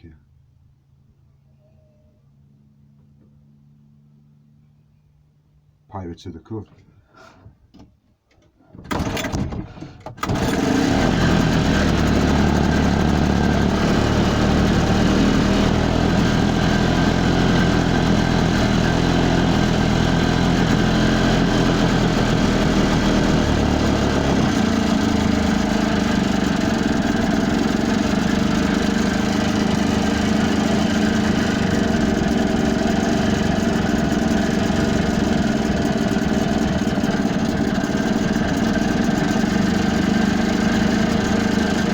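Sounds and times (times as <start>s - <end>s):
boat engine starting and running: 8.9s - 41.9s.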